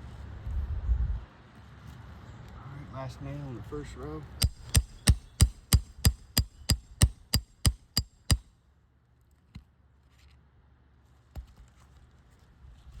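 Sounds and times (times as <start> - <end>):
hammer striking steel bar: 4.4 - 8.4.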